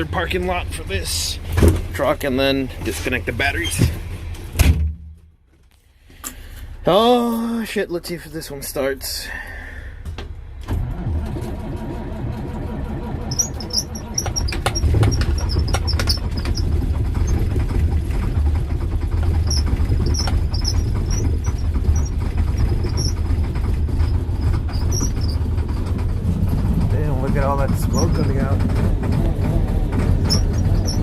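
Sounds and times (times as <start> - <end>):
diesel truck engine starting: 0.0 - 4.6, 5.9 - 31.0
high squeaks: 12.6 - 17.5, 19.2 - 26.2, 27.4 - 31.0.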